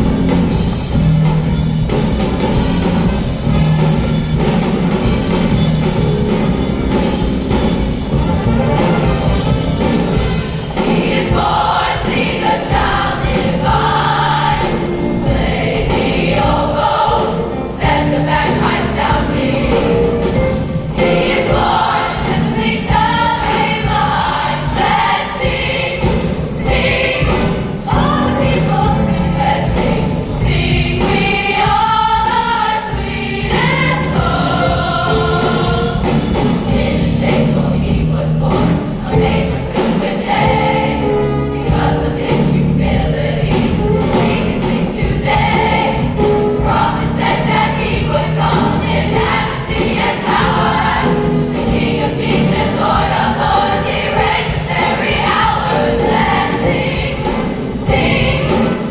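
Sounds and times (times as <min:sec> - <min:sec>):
choir singing with orchestra: 0:00.0 - 0:58.9.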